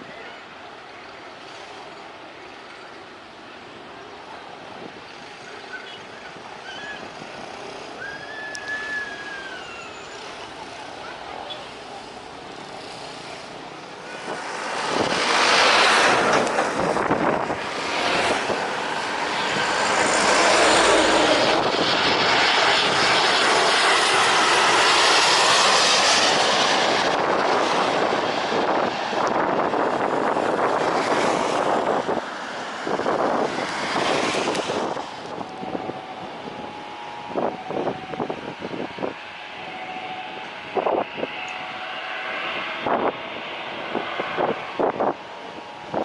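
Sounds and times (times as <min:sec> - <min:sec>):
jet airliner passing overhead: 0:00.0 - 0:46.0.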